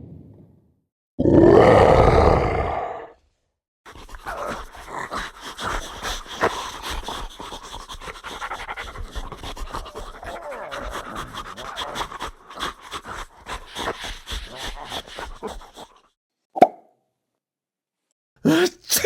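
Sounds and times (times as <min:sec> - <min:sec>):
growling animal roar: 0:01.2 - 0:03.2, 0:09.6 - 0:12.4
rapid ragged panting: 0:03.9 - 0:16.2.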